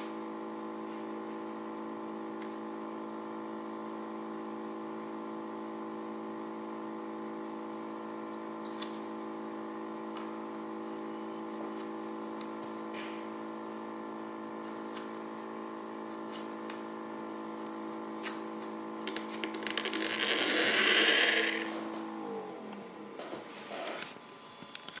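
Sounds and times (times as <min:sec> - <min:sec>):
spinning top whirring hum: 0:00.0 - 0:25.0
loud rattling buzz: 0:10.8 - 0:22.3.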